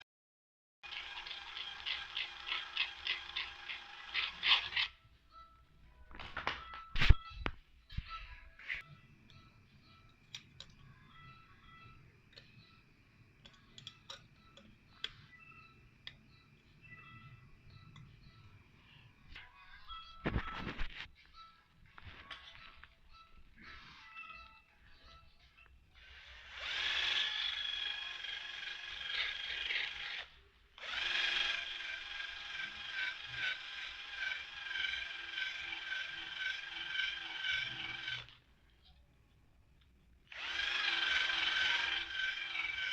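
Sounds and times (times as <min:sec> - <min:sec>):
electric power tool whirring: 0:00.8 - 0:04.9, 0:26.0 - 0:38.4, 0:40.3 - 0:42.9.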